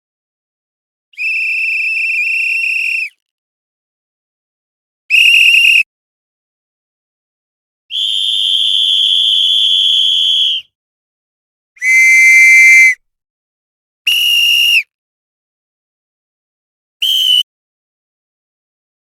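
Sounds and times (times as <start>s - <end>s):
whistle blasts: 1.2s - 3.2s, 5.1s - 5.8s, 7.9s - 10.7s, 11.8s - 13.0s, 14.1s - 14.9s, 17.0s - 17.5s.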